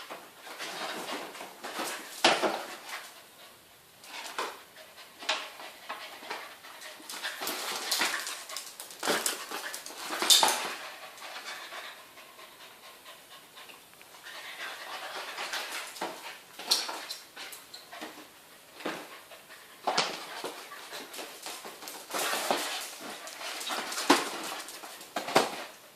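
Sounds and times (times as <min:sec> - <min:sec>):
dog panting and whimpering: 0:10.6 - 0:16.4.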